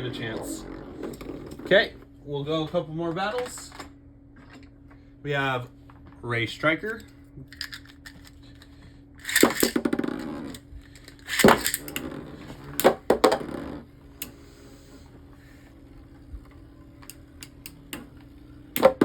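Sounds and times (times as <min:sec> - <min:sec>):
spinning top launcher rattling: 0:09.2 - 0:10.6, 0:11.2 - 0:12.1
spinning tops clacking together: 0:09.2 - 0:12.1.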